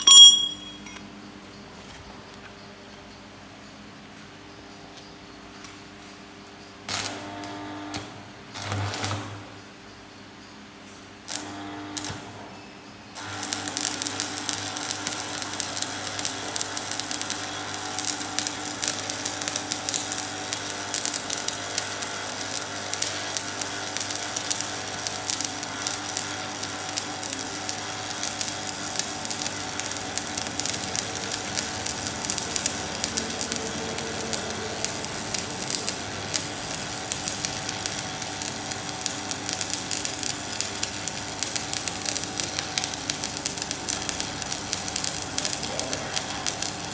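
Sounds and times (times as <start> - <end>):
arc welding crackle and sizzle: 6.8 - 9.8, 11.2 - 12.4, 13.1 - 46.9
sharp welding pops: 13.2 - 46.9.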